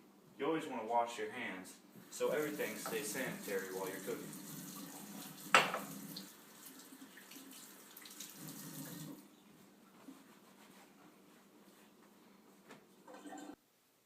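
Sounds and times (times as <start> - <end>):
hands washing under water: 2.0 - 9.2
water running from a tap: 2.0 - 9.2.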